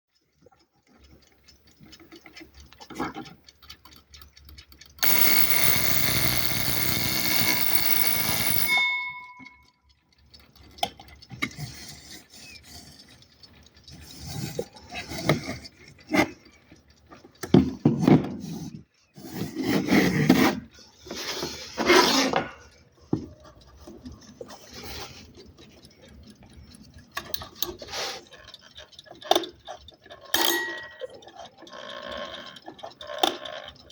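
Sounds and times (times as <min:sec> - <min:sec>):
alarm clock buzzing: 0:05.0 - 0:10.7, 0:30.2 - 0:33.9.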